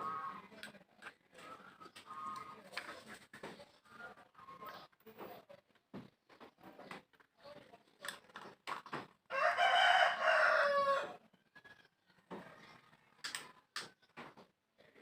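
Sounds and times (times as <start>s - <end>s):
rooster crowing: 9.3s - 11.2s.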